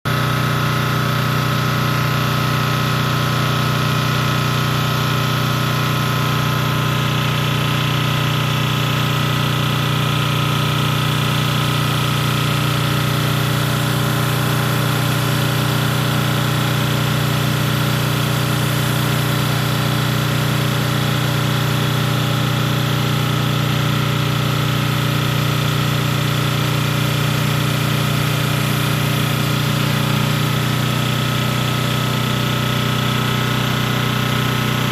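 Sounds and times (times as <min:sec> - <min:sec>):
water jets hissing on pavement: 0:00.1 - 0:25.6
pressure washer engine humming: 0:00.1 - 0:34.9.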